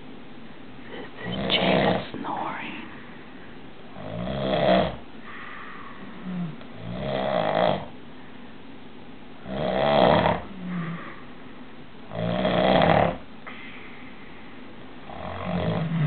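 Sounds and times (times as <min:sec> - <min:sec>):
man snoring loudly: 0:04.0 - 0:05.0, 0:06.2 - 0:07.9, 0:09.4 - 0:11.0, 0:12.1 - 0:13.2, 0:15.1 - 0:16.0
soft breath: 0:05.2 - 0:06.6, 0:10.5 - 0:11.7, 0:13.4 - 0:14.8.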